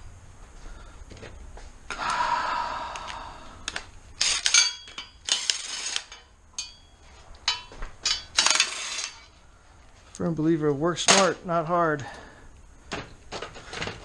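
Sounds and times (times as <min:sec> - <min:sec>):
metal hand tools clanking: 0:04.2 - 0:09.3.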